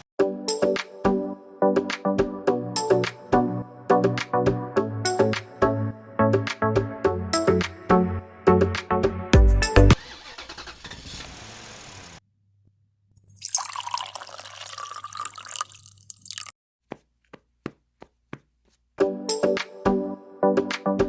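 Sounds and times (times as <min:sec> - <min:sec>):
water drips: 0:13.4 - 0:16.5.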